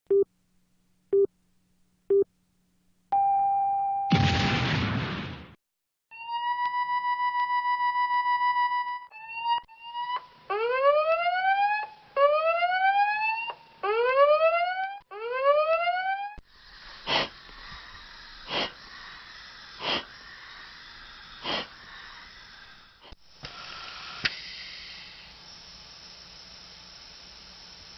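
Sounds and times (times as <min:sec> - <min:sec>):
electronic whooping alarm: 0:06.1 - 0:16.4
respirator hiss and whoosh: 0:16.5 - 0:27.9.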